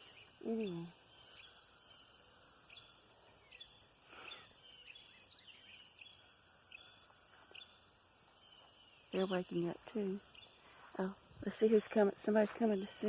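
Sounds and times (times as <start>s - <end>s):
birds chirping: 0.0s - 13.0s
high-pitched background hiss: 0.0s - 13.0s.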